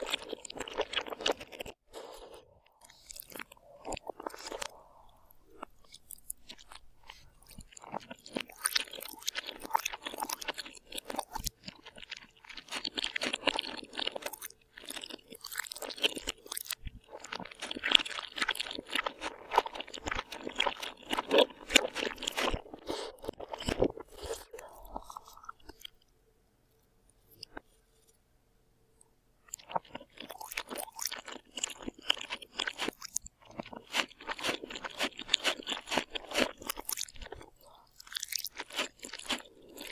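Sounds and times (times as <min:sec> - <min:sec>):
person chewing crunchy food: 0:00.0 - 0:26.1, 0:27.2 - 0:28.2, 0:29.4 - 0:39.9.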